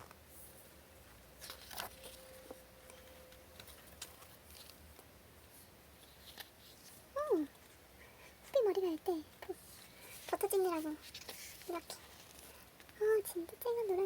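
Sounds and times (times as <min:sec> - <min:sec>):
paper pages rustling: 0:00.0 - 0:07.8, 0:09.5 - 0:13.0.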